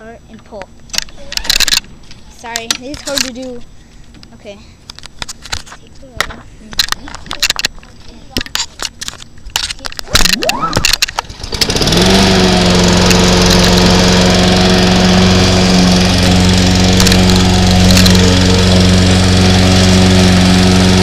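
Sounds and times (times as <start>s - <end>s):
lawn mower engine pull-started: 10.8s - 21.0s.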